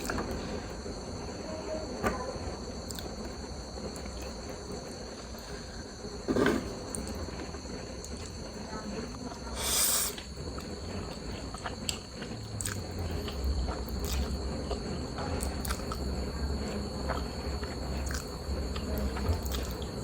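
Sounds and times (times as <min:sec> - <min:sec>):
chewing noodles: 0:10.0 - 0:20.0.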